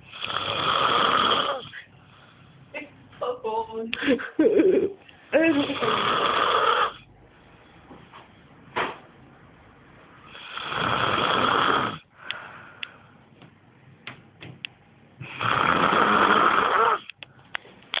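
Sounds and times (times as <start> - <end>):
man snoring: 0.1 - 1.8, 5.5 - 7.0, 10.3 - 12.1, 15.2 - 17.1
quiet breathing: 1.5 - 2.8, 12.0 - 13.4.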